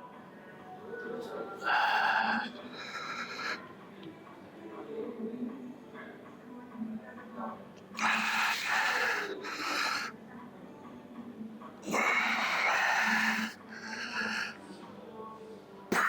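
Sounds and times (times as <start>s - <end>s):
man breathing hard: 1.6s - 3.6s, 8.0s - 10.1s, 11.9s - 14.6s.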